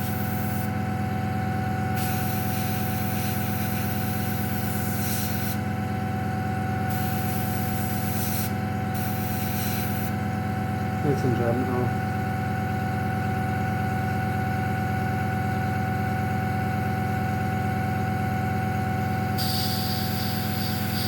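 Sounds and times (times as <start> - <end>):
airbrush hissing: 2.0 - 5.6, 6.9 - 10.1, 19.4 - 21.0.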